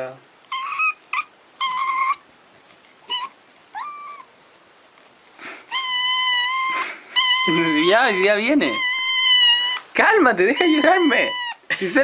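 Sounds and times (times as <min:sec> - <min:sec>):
cat meowing: 0:00.5 - 0:02.2, 0:03.0 - 0:04.3, 0:05.7 - 0:09.9, 0:10.5 - 0:11.7.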